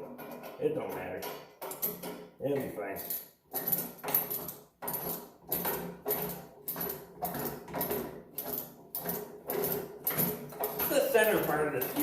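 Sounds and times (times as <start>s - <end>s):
metal hand tool striking metal rod: 9.0s - 12.0s.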